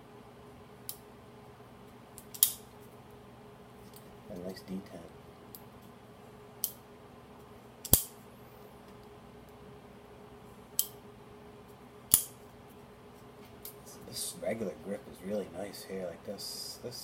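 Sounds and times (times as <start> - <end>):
folding knife clicks: 7.8 - 8.1.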